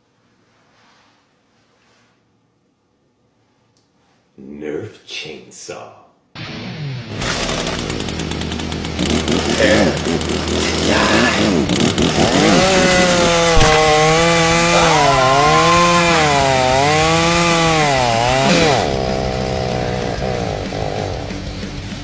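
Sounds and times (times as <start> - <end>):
chainsaw engine revving: 7.1 - 22.0.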